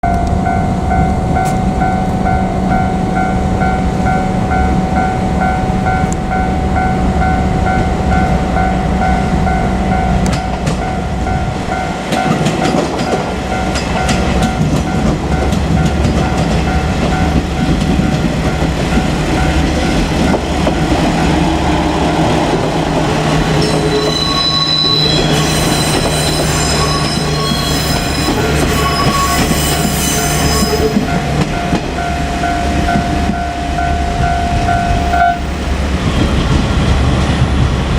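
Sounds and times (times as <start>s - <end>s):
diesel train rumbling past: 0.0s - 37.9s
wheels squealing: 18.0s - 31.8s
level crossing bell ringing: 23.6s - 35.6s.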